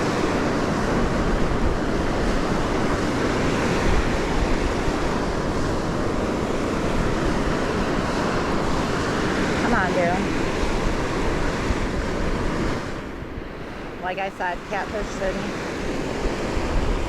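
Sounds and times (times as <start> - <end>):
surf washing onto beach: 0.0 - 17.0.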